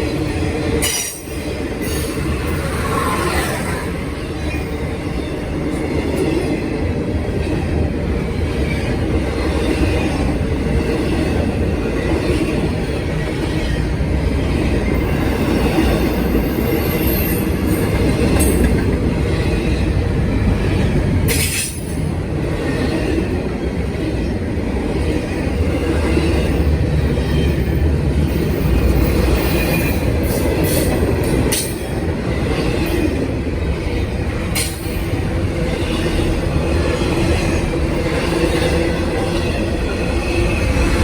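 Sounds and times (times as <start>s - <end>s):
train wheels rumbling on rails: 0.0s - 41.0s.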